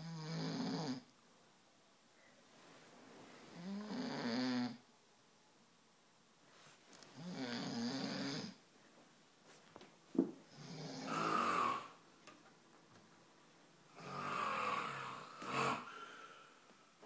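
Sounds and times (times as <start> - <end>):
man snoring: 0.0 - 1.0, 3.6 - 4.8, 7.2 - 8.6, 10.5 - 12.0, 13.9 - 16.5
quiet breathing: 2.0 - 4.8, 13.9 - 17.0.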